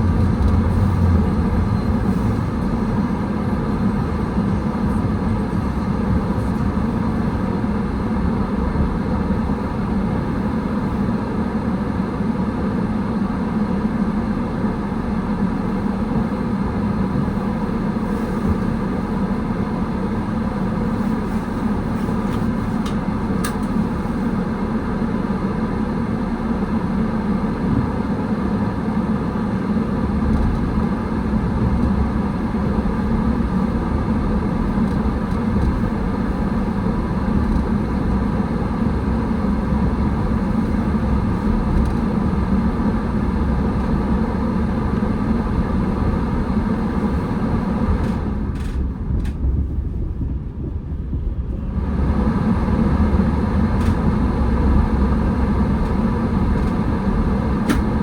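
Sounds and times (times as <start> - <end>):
road hiss: 0.0 - 11.8
car engine and tyres rumbling: 0.0 - 58.0.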